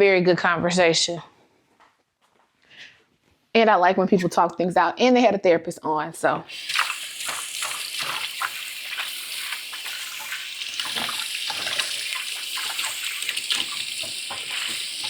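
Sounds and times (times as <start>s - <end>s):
tap water running into sink: 6.5s - 15.0s.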